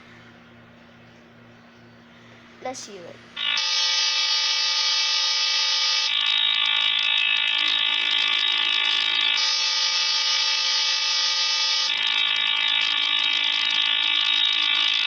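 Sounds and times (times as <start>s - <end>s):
harsh two-tone alarm buzzing: 3.4s - 15.0s.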